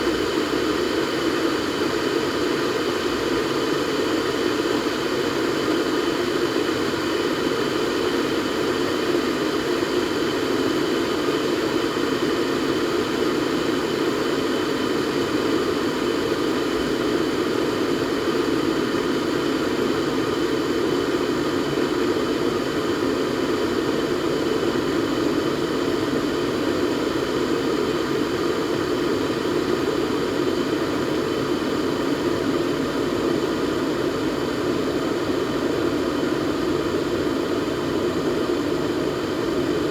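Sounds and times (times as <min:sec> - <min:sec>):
kettle heating water: 0:00.0 - 0:39.9.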